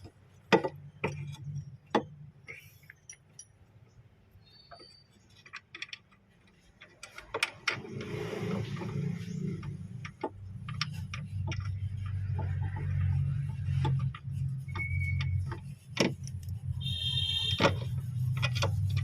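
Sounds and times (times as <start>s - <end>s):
hand tools clicking and clinking: 2.5s - 3.7s.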